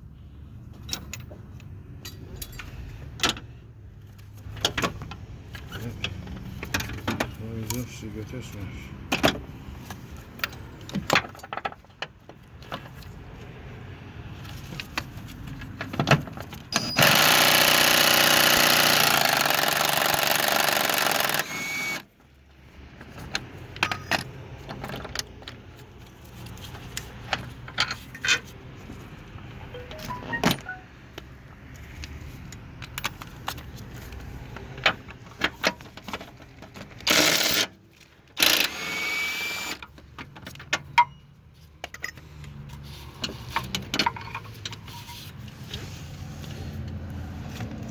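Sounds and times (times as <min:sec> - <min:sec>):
metal tools clinking and knocking: 0:23.8 - 0:25.0.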